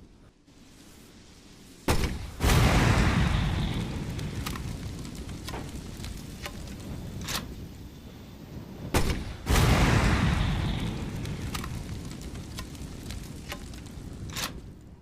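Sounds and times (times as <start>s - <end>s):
sharp crackles: 0.0s - 15.0s
grenade launcher shot: 1.9s - 4.0s, 8.9s - 11.0s
loud explosion burst: 1.9s - 5.1s, 8.8s - 13.0s.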